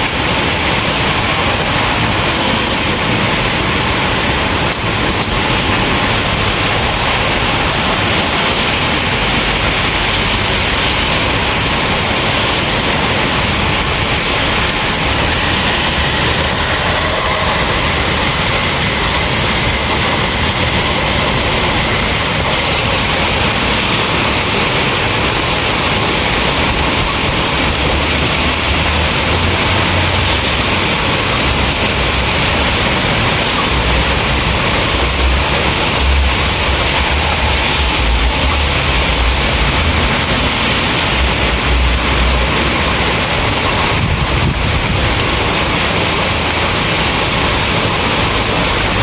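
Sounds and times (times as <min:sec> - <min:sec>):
loud rainfall: 0:00.0 - 0:49.0
low rumbles: 0:00.0 - 0:49.0.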